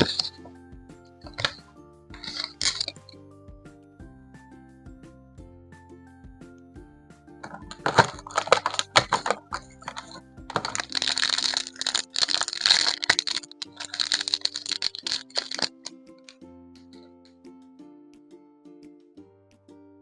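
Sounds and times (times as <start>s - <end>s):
plastic packaging crinkling: 0.0s - 0.3s, 1.3s - 1.6s, 2.2s - 2.9s, 7.4s - 15.9s
soft background music: 0.0s - 20.0s.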